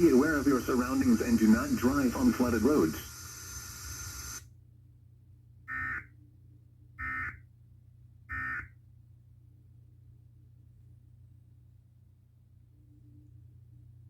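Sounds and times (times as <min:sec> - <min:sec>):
broadcast hiss: 0:00.0 - 0:04.4
buzzing data tone bursts: 0:00.0 - 0:04.4.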